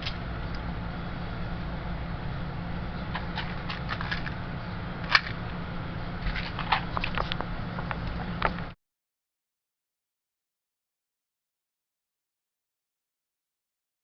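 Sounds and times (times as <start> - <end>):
steady low hum: 0.0 - 8.8.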